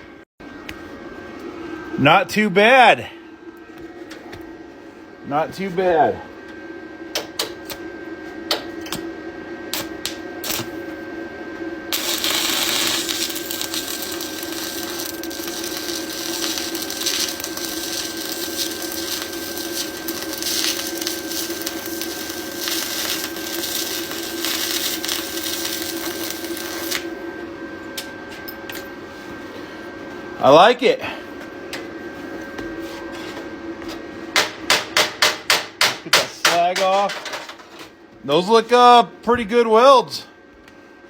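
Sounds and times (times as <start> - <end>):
welding arc crackling: 9.7 - 10.9, 11.9 - 27.2.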